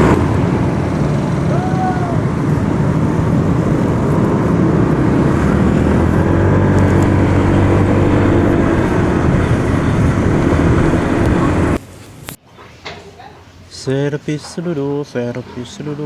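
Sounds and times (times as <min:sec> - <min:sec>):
scooter engine running: 0:02.2 - 0:11.8.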